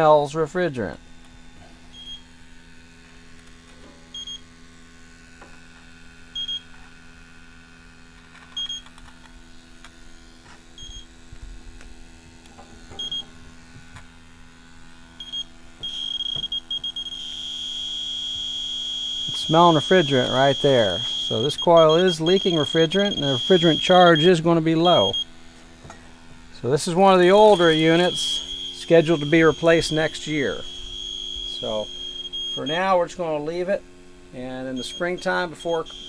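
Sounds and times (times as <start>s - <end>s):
low steady hum: 0.0s - 36.0s
continuous alarm tone: 0.8s - 2.9s, 4.1s - 5.3s, 6.3s - 6.7s, 12.1s - 36.0s
leak detector beeping: 1.9s - 2.6s, 4.1s - 4.5s, 6.3s - 6.9s, 8.4s - 9.0s, 10.2s - 11.2s, 12.8s - 33.6s, 34.4s - 36.0s.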